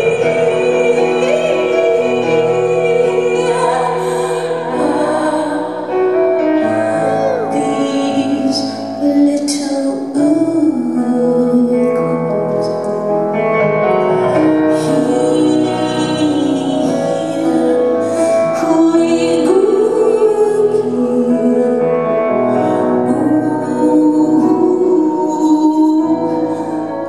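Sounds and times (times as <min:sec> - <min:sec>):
woman singing: 0:00.0 - 0:13.0, 0:14.2 - 0:27.0
piano accompaniment: 0:00.0 - 0:27.0.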